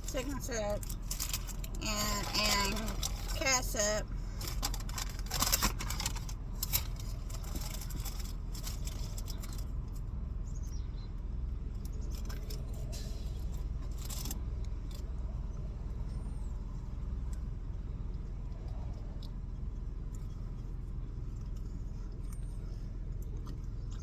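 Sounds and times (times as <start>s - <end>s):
light clicks and rattles: 0.0s - 10.1s
steady low rumble: 0.0s - 24.0s.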